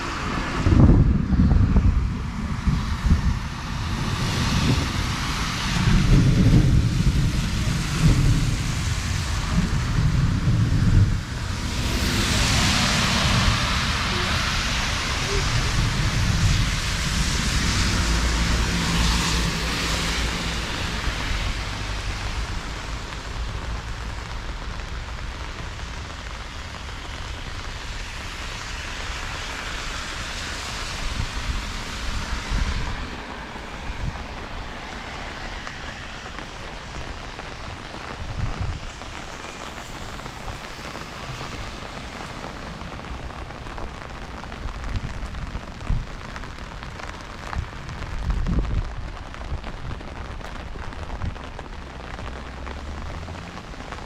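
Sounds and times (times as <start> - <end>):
low rumble: 0.0 - 24.3
rain falling on street: 0.0 - 54.0.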